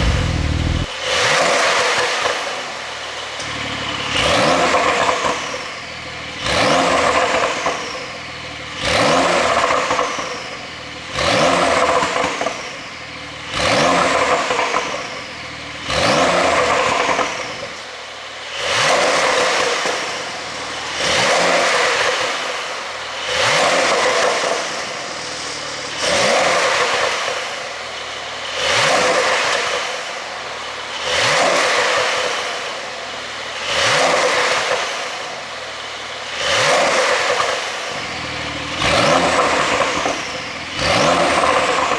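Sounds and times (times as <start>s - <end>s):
car engine revving: 0.0s - 2.3s, 3.4s - 10.4s, 11.1s - 12.6s, 13.4s - 15.2s, 15.8s - 17.7s, 18.4s - 41.9s.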